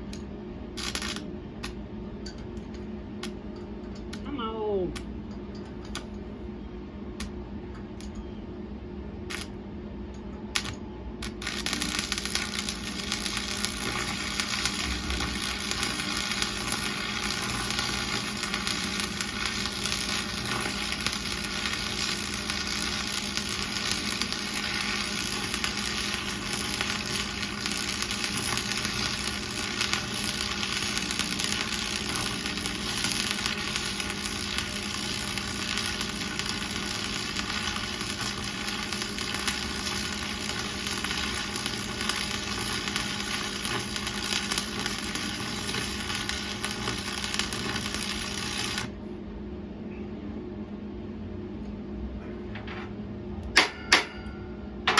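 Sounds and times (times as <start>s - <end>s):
welding arc crackling sizzle: 0.0s - 1.8s, 9.2s - 9.6s, 10.4s - 49.0s
low steady hum: 0.0s - 54.9s.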